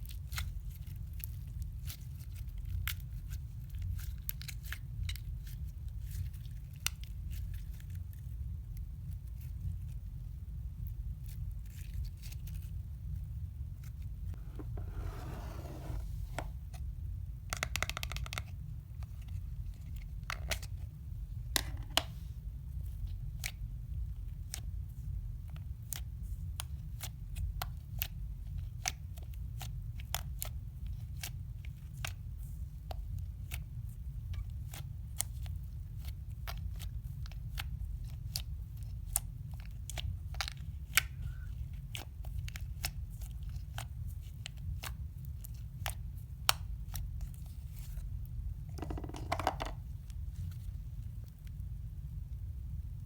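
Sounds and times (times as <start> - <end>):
low steady hum: 0.0 - 17.6, 18.4 - 53.0.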